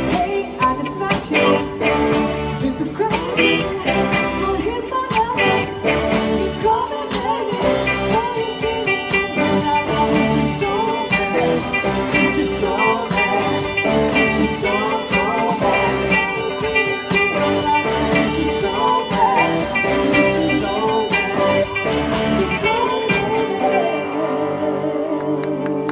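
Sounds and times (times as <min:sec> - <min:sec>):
steady drum beat: 0:00.0 - 0:23.6
pop band music: 0:00.0 - 0:25.9.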